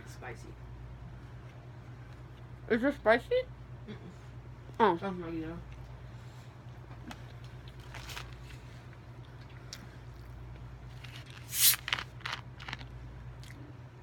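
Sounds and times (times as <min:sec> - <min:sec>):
steady low hum: 0:00.0 - 0:14.0
crunching while eating: 0:07.0 - 0:13.8.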